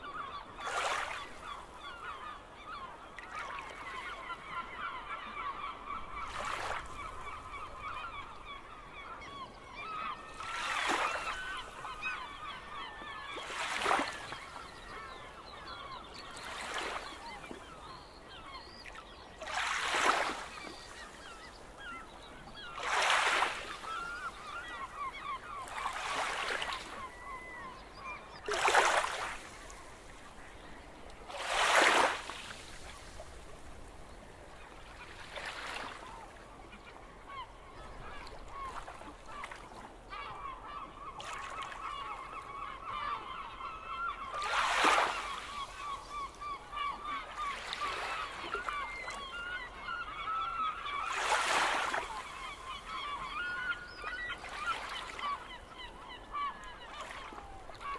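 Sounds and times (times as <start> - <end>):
gulls calling: 0.0 - 33.7, 34.5 - 57.9
sea waves breaking: 28.4 - 30.5, 31.2 - 33.9, 44.2 - 48.8, 51.0 - 55.3.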